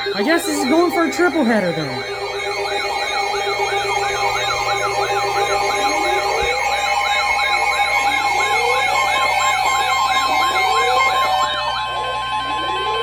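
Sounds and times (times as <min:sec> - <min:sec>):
steady alert tones: 0:00.0 - 0:03.7
warbling siren-like alarm: 0:00.0 - 0:13.0.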